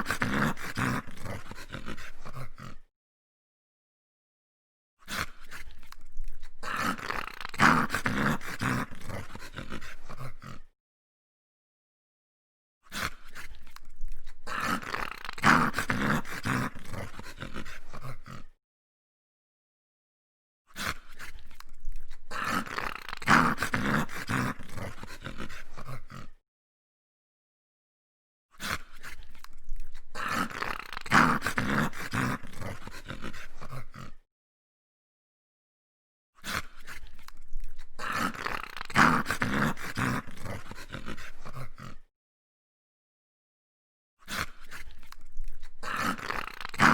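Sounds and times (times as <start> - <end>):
dogs growling: 0.0 - 2.9, 5.1 - 10.7, 12.9 - 18.6, 20.8 - 26.4, 28.6 - 34.2, 36.4 - 42.1, 44.3 - 46.9.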